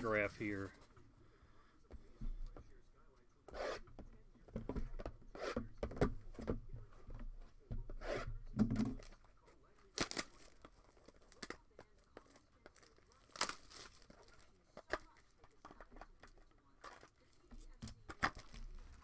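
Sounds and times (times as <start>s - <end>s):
plastic wrapping crinkling: 9.7s - 19.0s
sharp plastic rips: 9.8s - 17.2s.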